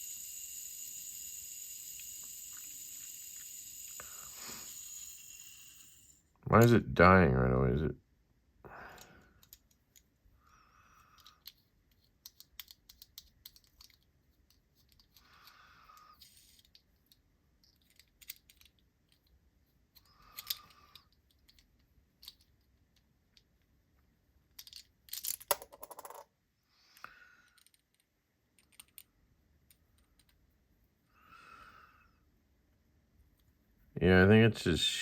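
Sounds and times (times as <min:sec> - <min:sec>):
fidget spinner clicks and rattles: 0:00.0 - 0:06.7, 0:11.2 - 0:23.5, 0:27.4 - 0:30.4.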